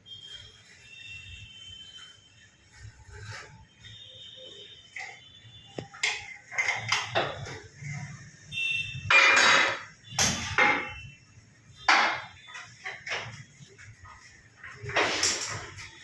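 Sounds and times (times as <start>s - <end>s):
steel pipe clanking and scraping: 4.9s - 8.4s, 9.0s - 16.0s.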